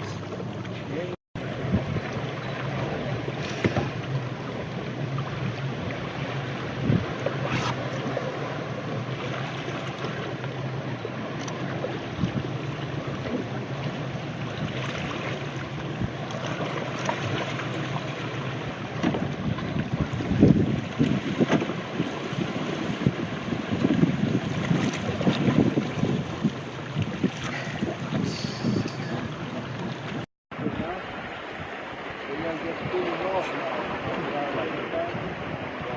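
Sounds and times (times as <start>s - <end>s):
boat engine humming: 0.0s - 35.9s
water noise: 0.0s - 35.9s
wind buffeting microphone: 1.4s - 7.3s, 18.6s - 35.9s.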